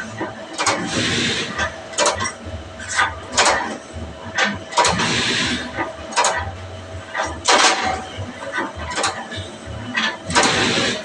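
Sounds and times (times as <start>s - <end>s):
machine hum: 0.0s - 11.0s.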